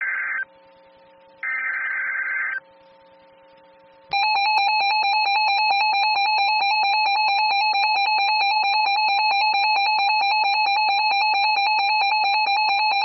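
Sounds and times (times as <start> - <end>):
loud steady attention tone: 0.0 - 13.0.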